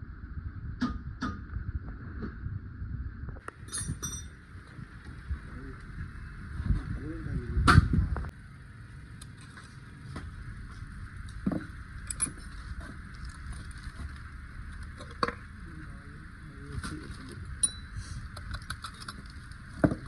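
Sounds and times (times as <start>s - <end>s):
steady background hiss: 3.4s - 20.0s
metallic clinks of tools and parts: 3.6s - 4.4s, 12.0s - 12.5s, 17.1s - 19.4s.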